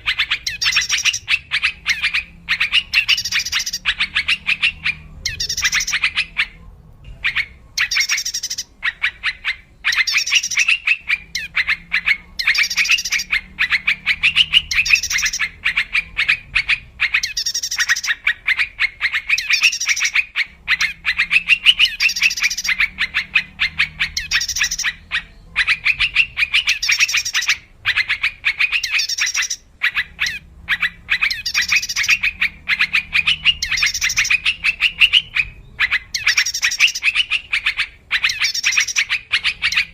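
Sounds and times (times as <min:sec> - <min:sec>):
bird chattering calls: 0:00.0 - 0:39.9
faint low hum: 0:00.0 - 0:39.9.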